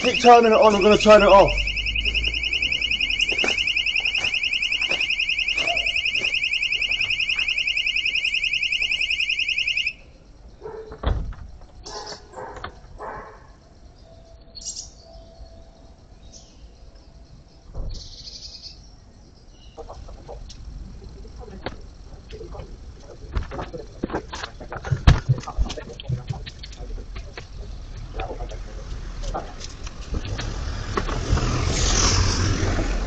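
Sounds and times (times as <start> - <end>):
warbling electronic alarm: 0.0 - 10.1.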